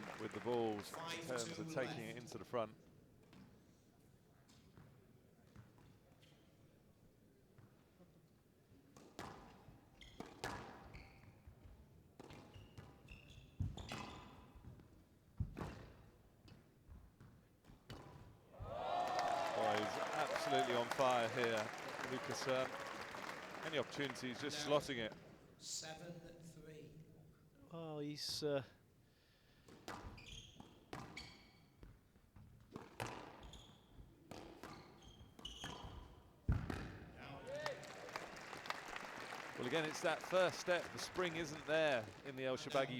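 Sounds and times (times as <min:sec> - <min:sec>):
shoes squeaking on court floor: 0:09.9 - 0:14.8, 0:29.9 - 0:32.0, 0:32.8 - 0:36.6.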